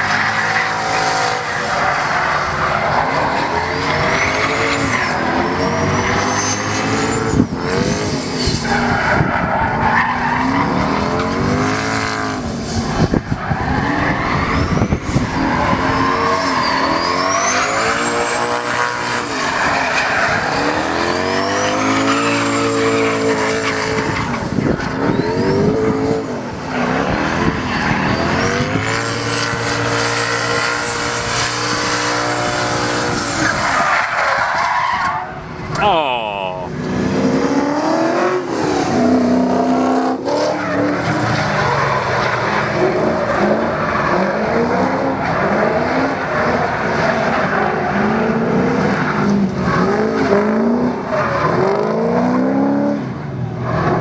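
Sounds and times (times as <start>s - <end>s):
car engine revving hard: 10.2s - 13.2s, 14.8s - 33.8s, 36.7s - 53.2s.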